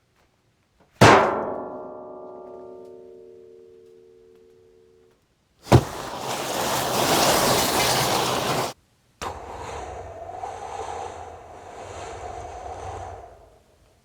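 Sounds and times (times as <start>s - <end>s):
quiet rushing rumble: 5.7s - 14.0s.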